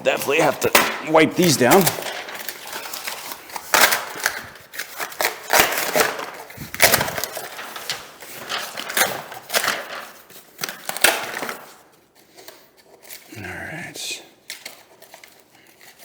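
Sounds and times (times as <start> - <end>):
flooring planks knocking and scraping: 0.2 - 3.2, 5.6 - 9.8.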